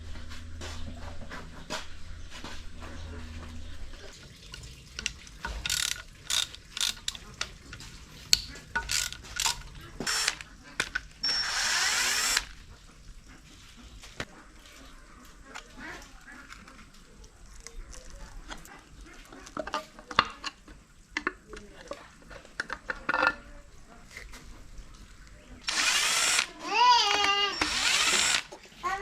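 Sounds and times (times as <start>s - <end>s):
steady low hum: 0.0s - 16.4s
tools and metal parts clinking: 4.4s - 11.1s.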